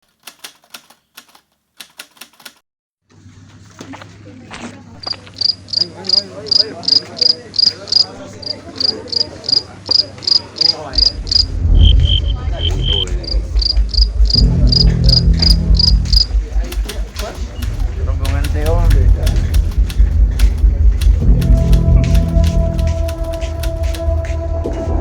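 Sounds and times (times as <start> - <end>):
insect chirping: 5.0 - 16.4
low steady hum: 10.9 - 24.6.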